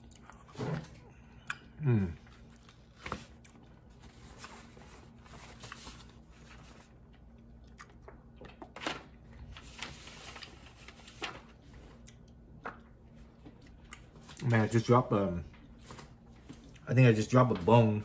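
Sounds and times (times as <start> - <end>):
wet chewing with clicks: 7.1 - 8.8, 12.0 - 14.6.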